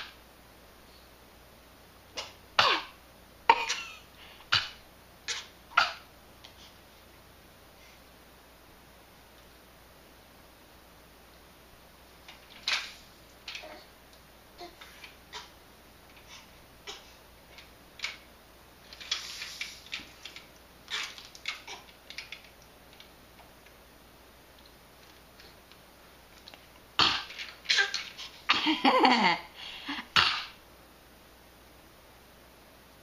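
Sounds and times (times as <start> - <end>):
person coughing: 2.2 - 6.0.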